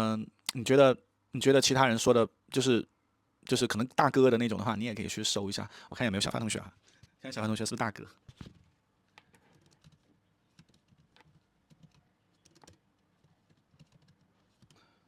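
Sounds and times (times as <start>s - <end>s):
computer keyboard typing: 9.3s - 14.8s.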